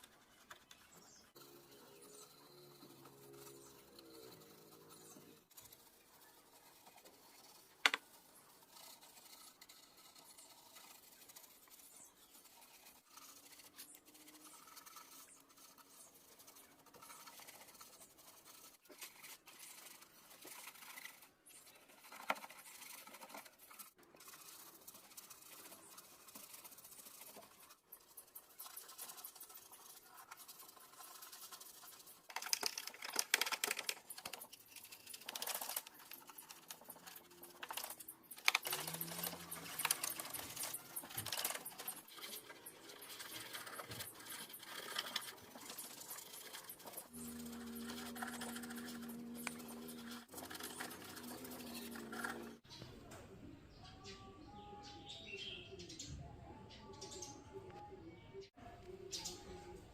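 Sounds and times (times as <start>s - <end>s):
scratchy rubbing by hand: 0.0s - 52.6s.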